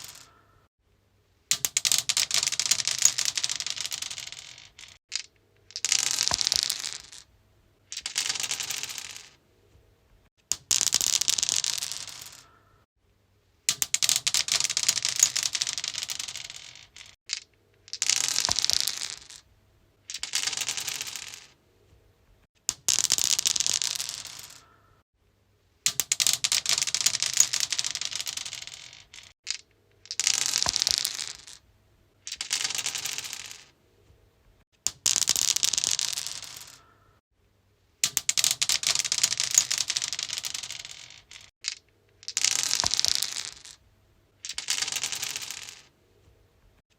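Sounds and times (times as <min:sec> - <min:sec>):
dice rattling on stone: 0:00.0 - 0:00.3, 0:01.5 - 0:07.3, 0:07.9 - 0:09.4, 0:10.5 - 0:12.5, 0:13.7 - 0:21.6, 0:22.7 - 0:24.6, 0:25.9 - 0:31.6, 0:32.2 - 0:33.7, 0:34.8 - 0:36.8, 0:38.0 - 0:43.8, 0:44.4 - 0:45.9.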